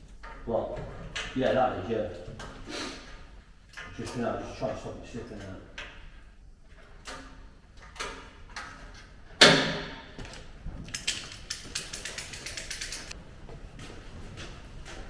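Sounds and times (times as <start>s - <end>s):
rapid ratchet clicking: 10.9s - 13.2s.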